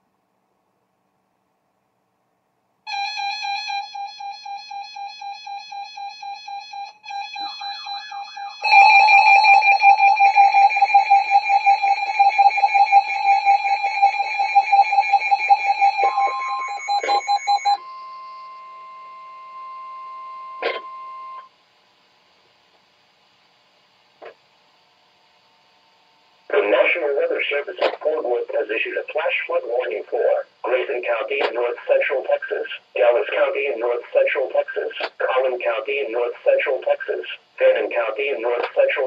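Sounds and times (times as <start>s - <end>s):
rapid electronic warning beeps: 6.2s - 21.4s
steady two-note warning tone: 6.7s - 21.5s.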